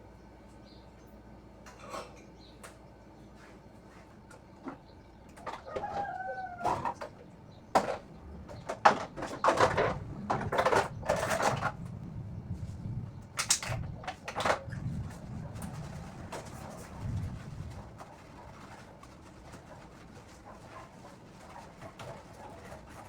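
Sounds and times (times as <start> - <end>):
rooster crowing: 5.5 - 7.1.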